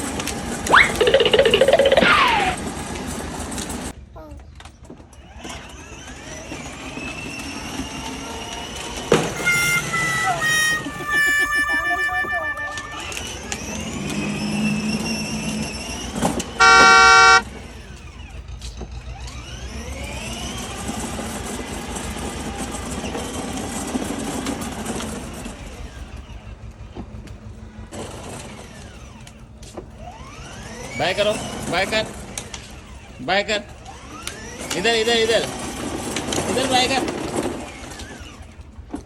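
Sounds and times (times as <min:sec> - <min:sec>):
horn toot: 0:09.2 - 0:14.4, 0:16.6 - 0:17.5.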